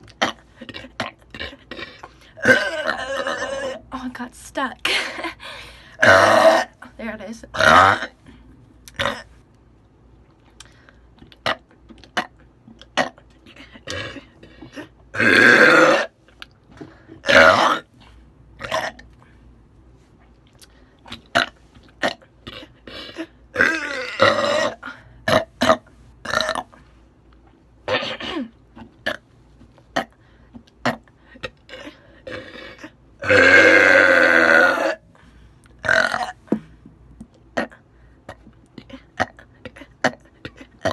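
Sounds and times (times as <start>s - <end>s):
woman belching: 0.1s - 3.9s, 6.0s - 6.8s, 7.5s - 8.1s, 11.4s - 16.1s, 17.2s - 17.8s, 21.3s - 26.7s, 31.7s - 35.0s, 35.8s - 36.4s, 38.8s - 40.9s.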